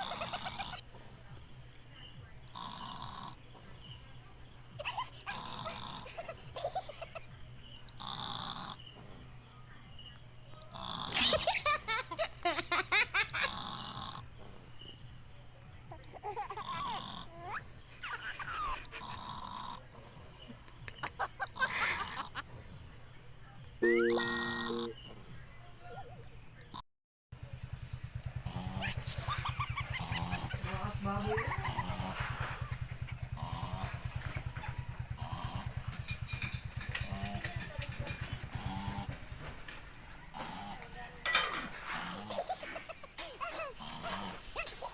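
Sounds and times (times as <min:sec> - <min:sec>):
crickets chirring: 0:00.0 - 0:26.8, 0:27.4 - 0:44.9
person snoring with rattle: 0:02.4 - 0:03.6, 0:05.2 - 0:06.4, 0:07.8 - 0:09.4, 0:10.6 - 0:11.3, 0:13.4 - 0:14.7, 0:16.6 - 0:20.6, 0:30.1 - 0:37.6, 0:38.2 - 0:39.3, 0:40.3 - 0:42.5, 0:43.5 - 0:44.6
short tone: 0:23.8 - 0:24.9.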